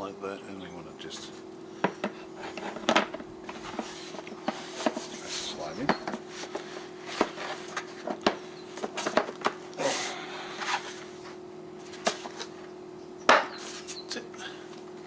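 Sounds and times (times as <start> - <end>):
plastic scrape: 2.4 - 5.6.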